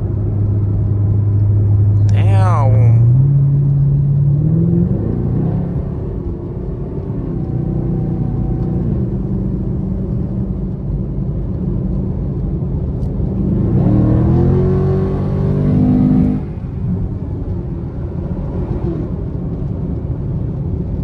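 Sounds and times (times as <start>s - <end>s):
car engine revving: 13.2s - 17.1s.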